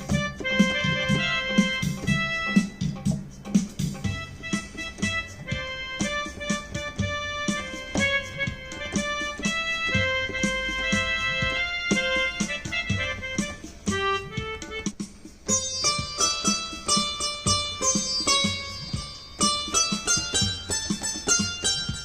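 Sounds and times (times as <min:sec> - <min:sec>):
keyboard melody with rhythm accompaniment: 0:00.0 - 0:22.0.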